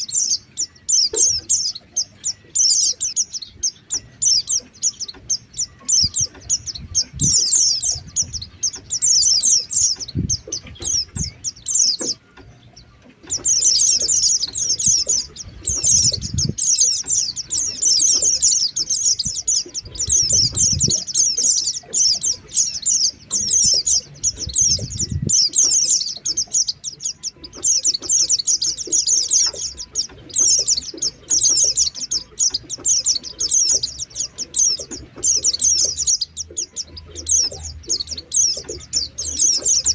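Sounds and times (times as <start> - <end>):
low rumbles: 0.0 - 27.8
birds twittering: 0.0 - 39.9.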